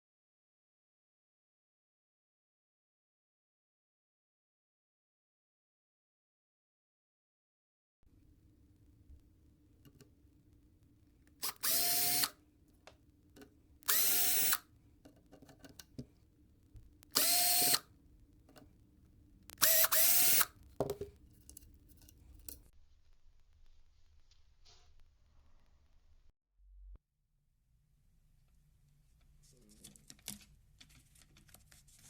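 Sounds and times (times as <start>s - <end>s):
sander motor whining: 11.4s - 12.3s, 13.9s - 14.6s, 17.1s - 17.8s, 19.6s - 20.5s.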